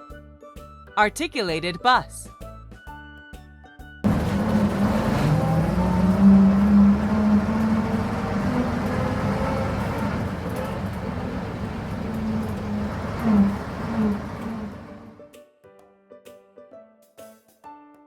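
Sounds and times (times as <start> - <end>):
bus engine running: 4.1 - 15.2.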